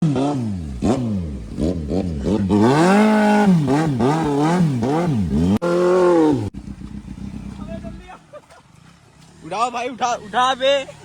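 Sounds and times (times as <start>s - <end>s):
motorcycle engine revving: 0.0s - 8.2s, 9.0s - 11.0s.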